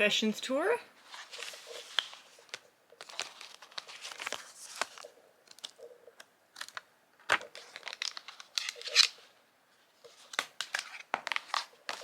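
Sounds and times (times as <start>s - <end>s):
plastic crinkling: 1.1s - 5.9s.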